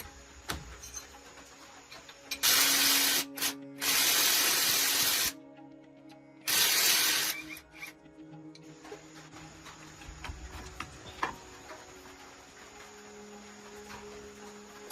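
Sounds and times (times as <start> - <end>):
faint background music: 0.0 - 14.9
pressurised spray hissing: 2.4 - 5.4.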